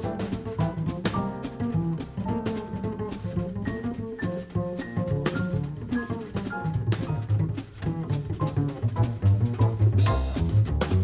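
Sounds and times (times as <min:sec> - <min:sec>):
live jazz: 0:00.0 - 0:11.0
piano: 0:00.0 - 0:11.0
plucked double bass: 0:00.0 - 0:11.0.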